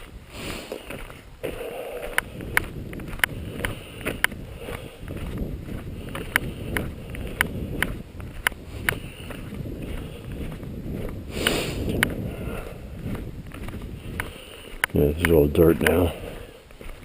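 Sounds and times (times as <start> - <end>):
footsteps crunching on frozen dirt: 0.0 - 17.0
sharp clicks: 13.5 - 16.0.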